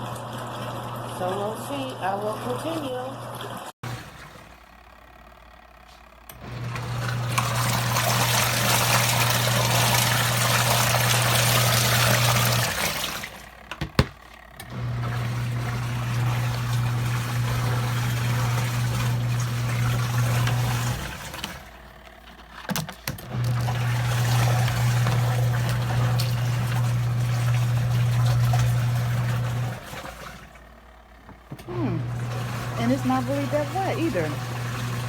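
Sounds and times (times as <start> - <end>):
water and laundry sloshing: 0.0 - 4.9, 6.4 - 30.8, 31.4 - 35.0
washing machine motor humming: 0.0 - 35.0
washing machine click: 13.6 - 16.5.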